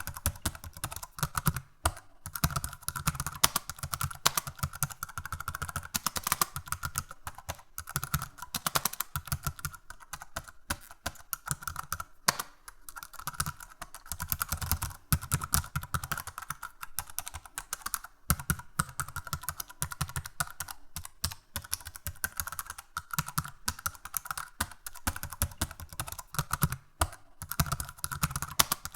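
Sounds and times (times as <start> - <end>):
computer keyboard typing: 0.0 - 28.9.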